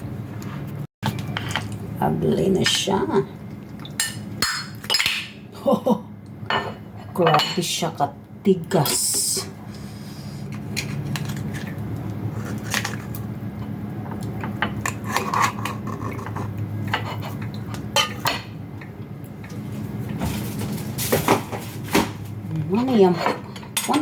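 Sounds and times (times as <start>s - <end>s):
cutlery clinking and scraping dishes: 22.8s - 24.0s.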